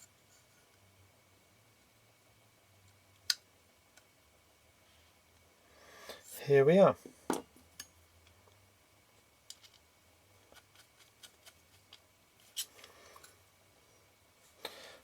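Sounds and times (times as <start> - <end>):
small metal parts clicking and tapping: 9.5 - 9.9.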